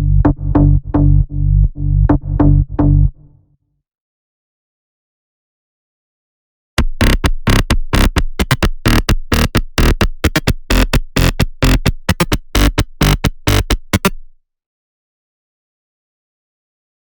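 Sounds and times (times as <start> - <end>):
electronic bass beat: 0.0 - 3.2, 6.8 - 14.3.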